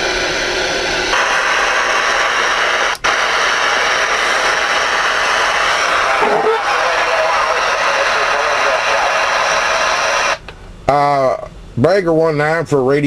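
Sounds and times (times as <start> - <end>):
radio static hissing: 0.0 - 10.4.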